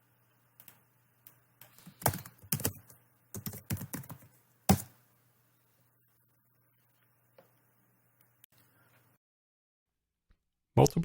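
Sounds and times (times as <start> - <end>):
keyboard typing: 0.6 - 5.0.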